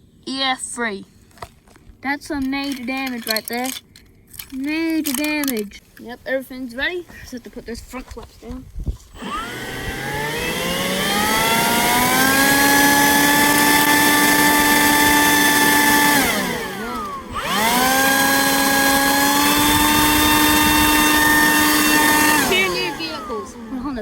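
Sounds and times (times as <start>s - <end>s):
leaf blower motor whining: 9.0s - 24.0s.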